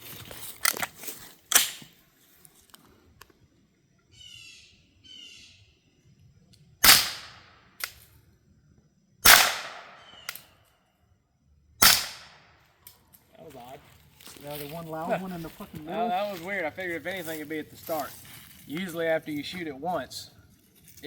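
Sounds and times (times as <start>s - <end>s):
suppressed gunshots: 6.8s - 7.6s, 9.2s - 10.4s, 11.8s - 12.5s.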